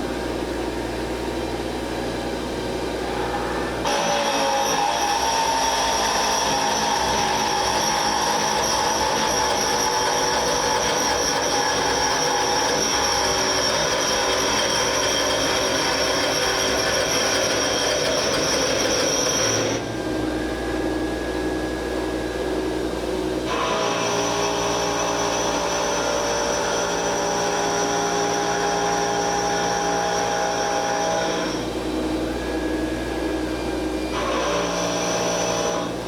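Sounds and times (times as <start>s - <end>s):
lathe high whine: 0.0s - 36.0s
machine hum with thin tone: 0.0s - 36.0s
tool cutting spinning wood: 3.8s - 20.0s, 23.5s - 31.8s, 34.0s - 36.0s.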